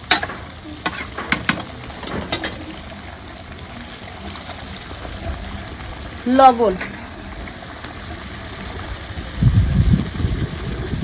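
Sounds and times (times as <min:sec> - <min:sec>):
metal spatula knocking on pan: 0:00.0 - 0:02.6
chicken frying: 0:00.0 - 0:11.0.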